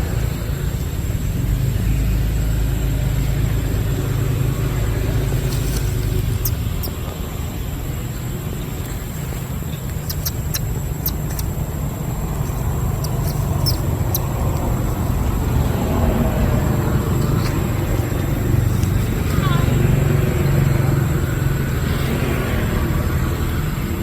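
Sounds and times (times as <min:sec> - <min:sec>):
low outdoor rumble: 0:00.0 - 0:24.0.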